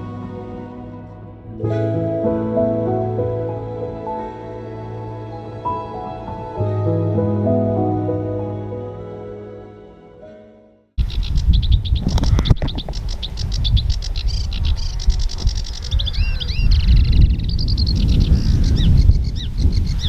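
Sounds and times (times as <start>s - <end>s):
warbler singing: 11.0s - 20.0s
wind rumble on microphone: 11.0s - 20.0s.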